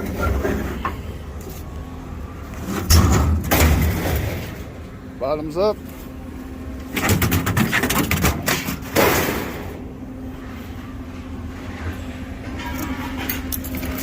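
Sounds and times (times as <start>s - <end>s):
scrap metal clattering and banging: 0.0s - 1.0s, 2.6s - 4.7s, 11.6s - 14.0s
steady low hum: 0.0s - 14.0s
heavy metal crash: 2.8s - 4.7s.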